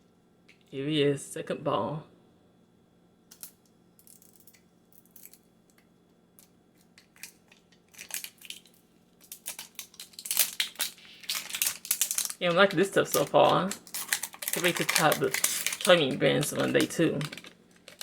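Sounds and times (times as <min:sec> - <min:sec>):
plastic wrapping crinkling and tearing: 0:06.8 - 0:18.0.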